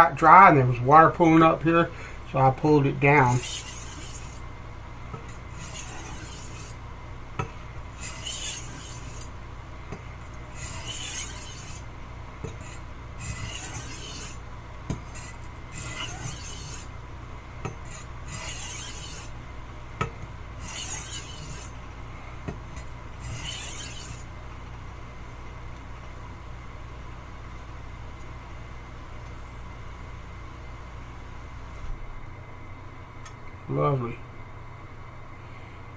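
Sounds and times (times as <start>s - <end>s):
knife rasping on whetstone: 3.2s - 4.5s, 5.2s - 6.8s, 7.4s - 9.4s, 10.5s - 17.0s, 17.6s - 19.4s, 20.6s - 21.8s, 23.2s - 24.3s.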